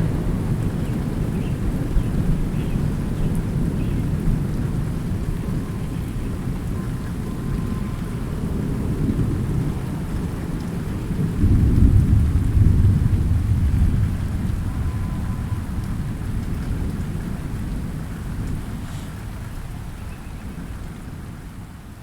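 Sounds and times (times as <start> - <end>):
rain: 0.0 - 22.0
low rolling thunder: 7.6 - 21.8.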